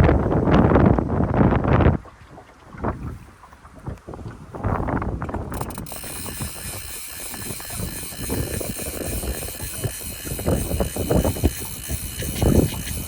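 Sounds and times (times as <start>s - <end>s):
rumbling wind-like noise: 4.1s - 13.0s
small motor whining: 5.5s - 13.0s.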